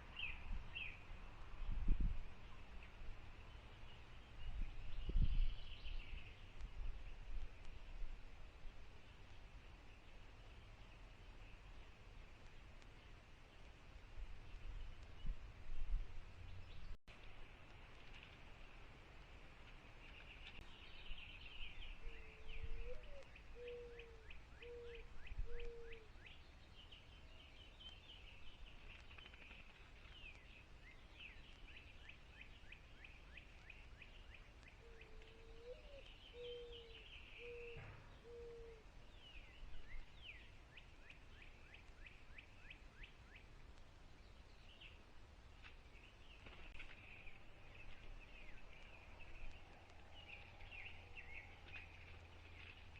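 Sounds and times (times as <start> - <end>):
small birds chirping and trilling: 18.1 - 52.9
low cooing bird call: 21.6 - 26.4, 34.6 - 40.4.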